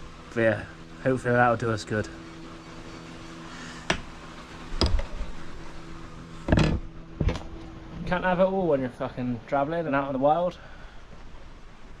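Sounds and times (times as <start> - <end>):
faint steady hum: 0.0 - 12.0
sharp knocks and clicks: 3.8 - 4.1, 4.8 - 5.2.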